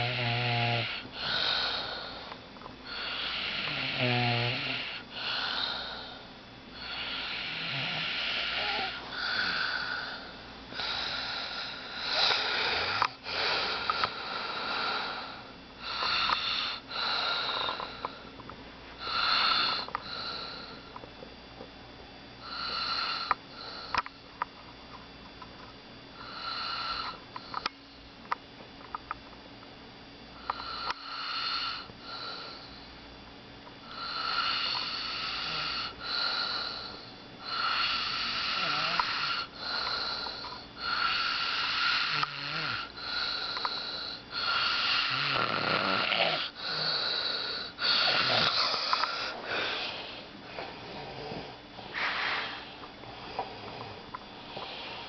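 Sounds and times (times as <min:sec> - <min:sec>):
man snoring loudly: 0:00.0 - 0:02.2, 0:02.9 - 0:06.2, 0:06.8 - 0:17.8, 0:19.0 - 0:20.6, 0:22.4 - 0:23.8, 0:26.2 - 0:27.2, 0:30.4 - 0:32.6, 0:33.9 - 0:49.8, 0:50.8 - 0:52.1.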